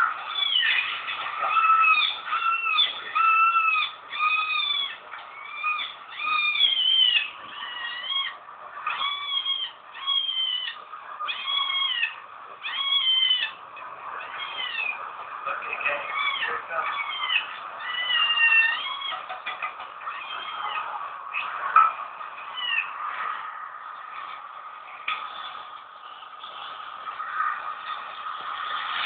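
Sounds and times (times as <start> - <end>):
small animal mewing cries: 0.3 - 13.6, 14.2 - 15.0, 16.0 - 19.3, 20.0 - 21.0.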